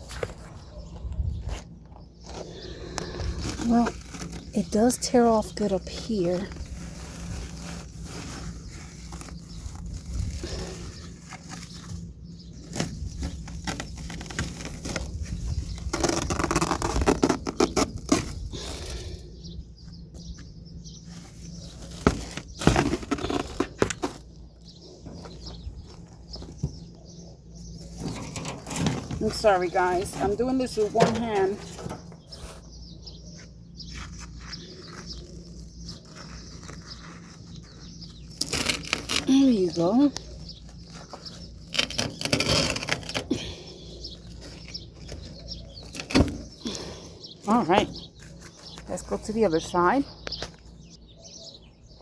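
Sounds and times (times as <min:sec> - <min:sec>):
floor covering scraping and tearing: 0:02.3 - 0:12.0, 0:40.9 - 0:43.2
rug tearing and rustling: 0:03.3 - 0:19.0, 0:21.0 - 0:24.4, 0:33.8 - 0:46.8.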